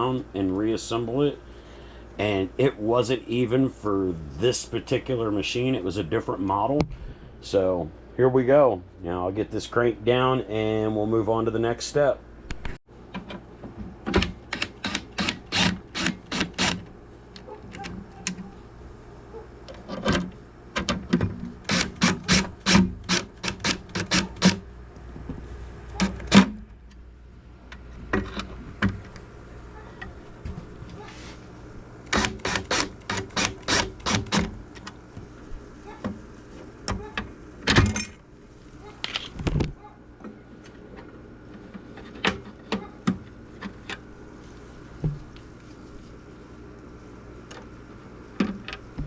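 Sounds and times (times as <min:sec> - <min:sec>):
screwdriver clicking: 0:14.5 - 0:16.8.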